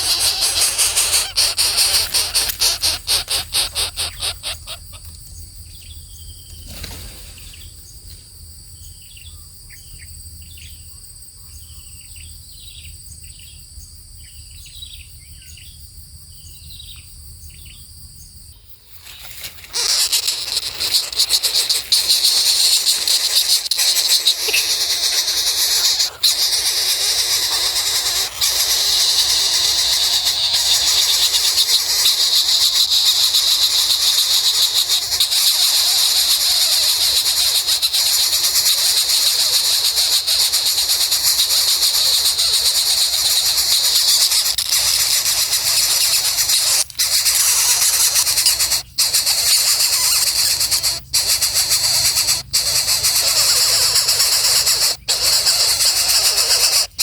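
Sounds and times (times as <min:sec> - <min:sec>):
loud high-pitched insect buzz: 0:00.0 - 0:05.2, 0:19.0 - 0:57.0
insects trilling: 0:00.0 - 0:57.0
short falling bird chirps: 0:06.2 - 0:08.2.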